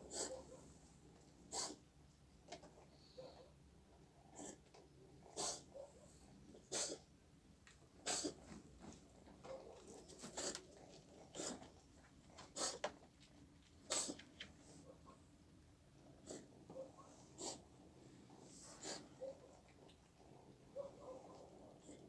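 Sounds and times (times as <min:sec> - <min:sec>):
cat sneezing and coughing: 0:00.0 - 0:00.4, 0:01.5 - 0:01.8, 0:05.3 - 0:05.7, 0:06.6 - 0:07.1, 0:08.0 - 0:08.4, 0:13.9 - 0:14.2, 0:18.8 - 0:19.1.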